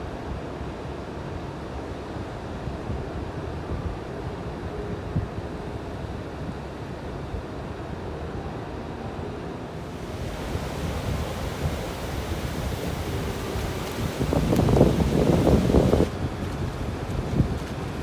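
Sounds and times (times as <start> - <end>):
surf washing on beach: 9.7 - 18.0
wind buffeting microphone: 9.8 - 18.0.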